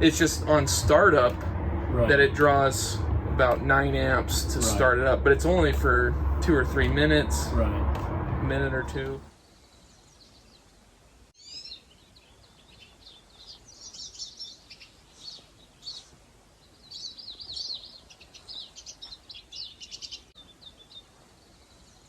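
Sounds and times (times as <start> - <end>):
small birds chirping and trilling: 8.8 - 22.0.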